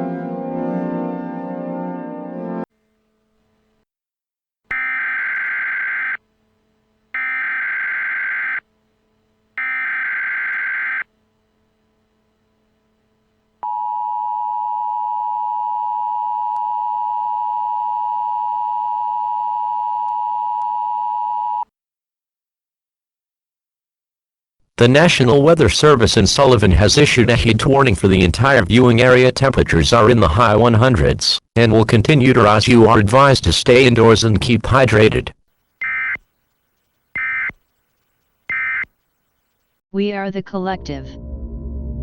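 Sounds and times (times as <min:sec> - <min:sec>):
two-tone attention signal: 0:04.7 - 0:06.2, 0:07.2 - 0:08.6, 0:09.6 - 0:11.0, 0:35.8 - 0:36.2, 0:38.5 - 0:38.9.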